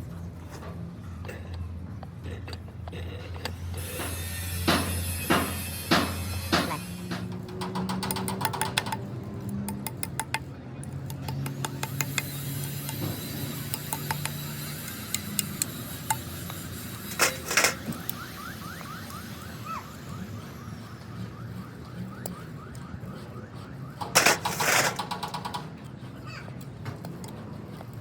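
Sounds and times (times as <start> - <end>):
metallic clatter: 17.1 - 18.0, 24.0 - 25.7.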